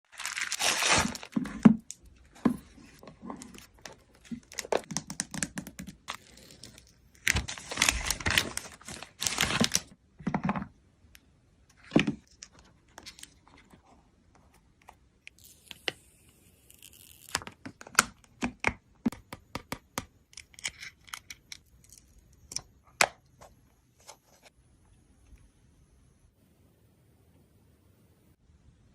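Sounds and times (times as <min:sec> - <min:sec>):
plastic wrap tearing and crinkling: 0:00.1 - 0:01.7, 0:06.1 - 0:09.9.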